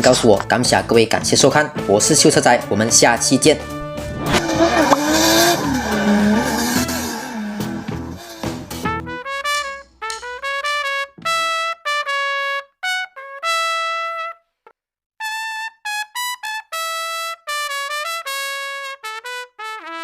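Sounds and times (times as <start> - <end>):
solo trumpet melody: 4.2 - 14.5, 15.2 - 20.0.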